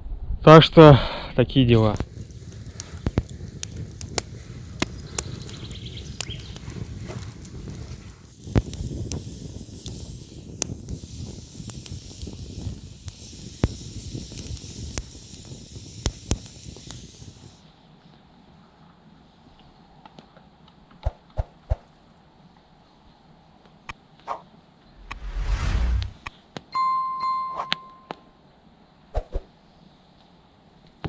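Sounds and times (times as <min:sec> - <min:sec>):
campfire crackling: 0:01.9 - 0:17.6, 0:25.0 - 0:26.2.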